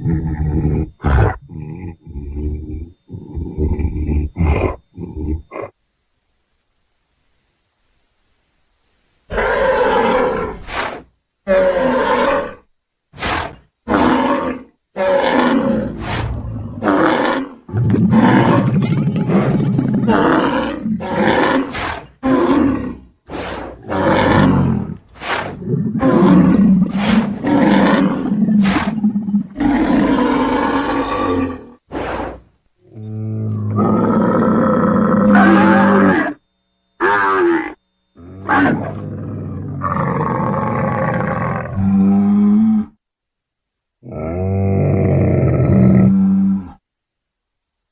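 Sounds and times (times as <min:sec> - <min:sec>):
deep animal bellows and grunts: 0:00.0 - 0:05.7, 0:15.1 - 0:36.3, 0:37.5 - 0:43.0.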